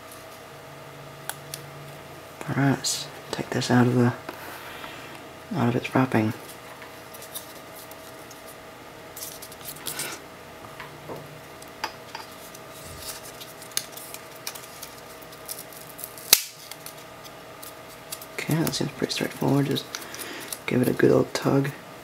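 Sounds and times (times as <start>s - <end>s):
packaging rustling and crinkling: 12.3s - 21.0s.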